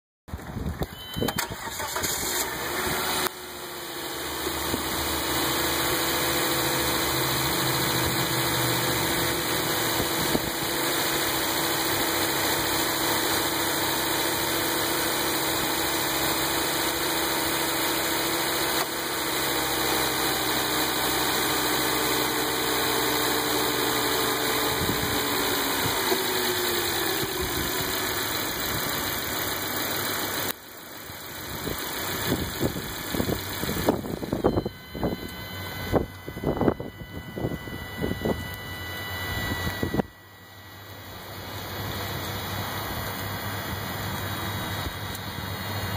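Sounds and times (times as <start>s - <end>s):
car engine running: 0.3s - 45.9s
buzzing hum: 32.3s - 45.9s.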